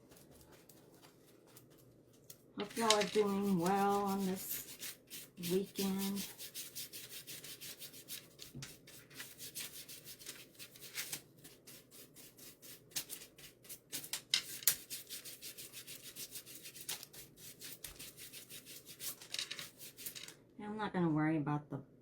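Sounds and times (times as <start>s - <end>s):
paintbrush scrubbing on wood: 2.6s - 10.9s, 11.5s - 20.3s.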